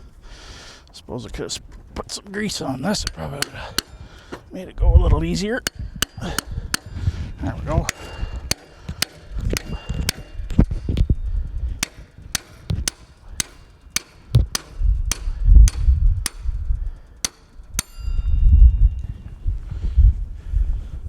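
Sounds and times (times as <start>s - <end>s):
hammer tapping metal: 2.3s - 4.4s, 5.0s - 19.0s
low rumbling thumps: 2.4s - 21.0s.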